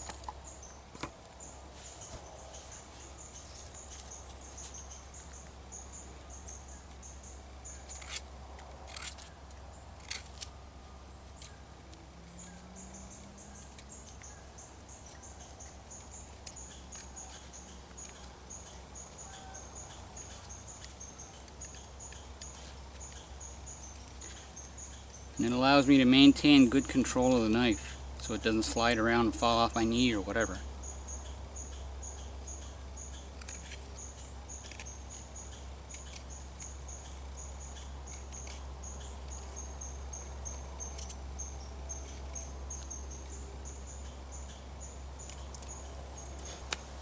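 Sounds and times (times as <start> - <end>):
insects chirping: 0.0 - 47.0.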